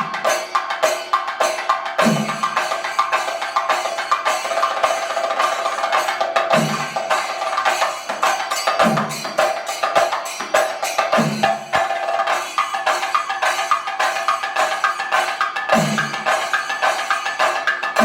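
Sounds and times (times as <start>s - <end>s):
cymbals ringing: 0.0s - 18.0s
fast dense drumming: 14.8s - 18.0s.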